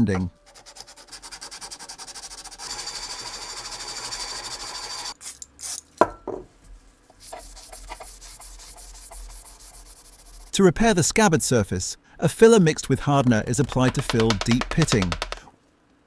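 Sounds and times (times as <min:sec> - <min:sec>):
sandpaper rubbing on metal: 0:00.5 - 0:05.1, 0:07.1 - 0:10.6.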